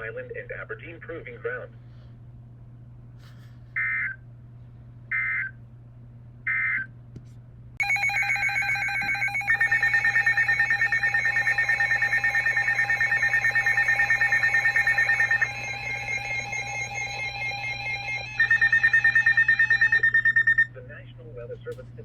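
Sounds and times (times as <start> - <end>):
electronic alert tone pulsing: 7.8 - 20.7.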